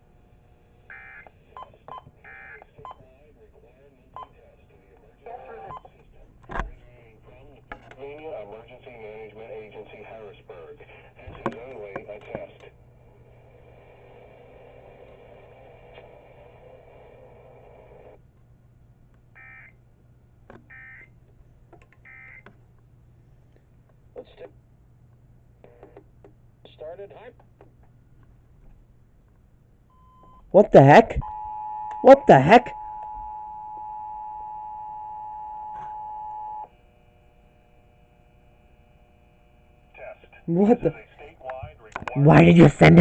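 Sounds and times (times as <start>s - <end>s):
warbling data tone bursts: 31.2s - 36.7s.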